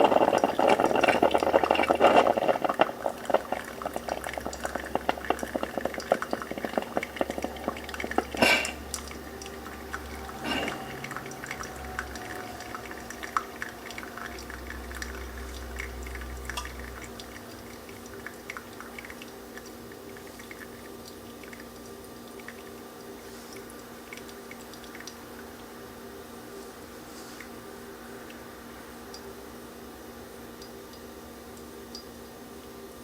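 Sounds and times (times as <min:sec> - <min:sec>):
coffee dripping into glass carafe: 0:00.0 - 0:25.6
faint steady hum: 0:00.0 - 0:33.0.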